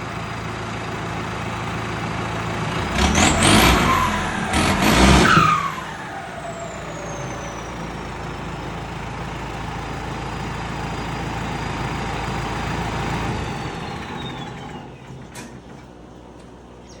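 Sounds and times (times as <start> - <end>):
tractor diesel engine idling: 0.0 - 17.0.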